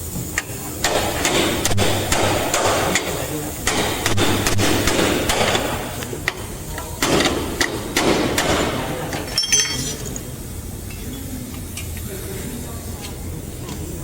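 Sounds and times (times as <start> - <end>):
hammer tapping sheet metal: 0.8 - 6.4
ringing metallic clink: 9.2 - 10.3.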